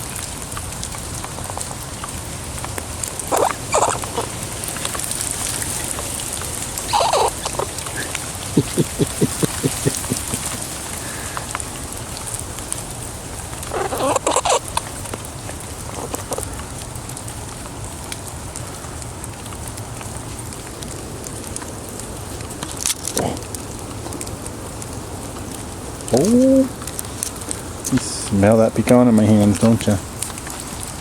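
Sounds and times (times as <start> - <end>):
rain pattering: 0.0 - 31.0
squirrel squeaking: 3.3 - 4.4, 6.8 - 10.6, 13.7 - 14.9.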